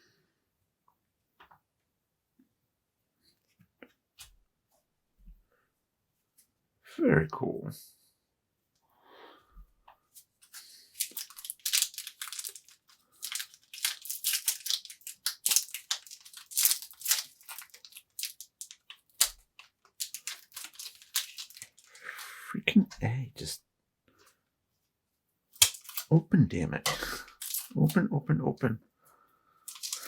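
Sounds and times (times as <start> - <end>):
plastic wrapper crinkling: 10.5 - 22.2, 25.6 - 26.1, 26.9 - 28.0, 29.7 - 30.0.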